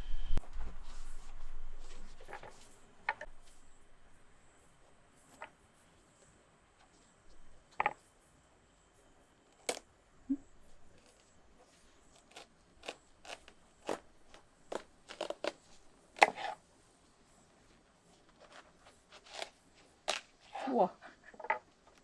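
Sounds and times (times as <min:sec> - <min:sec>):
knife cutting watermelon rind: 0:10.8 - 0:16.6, 0:18.3 - 0:20.8.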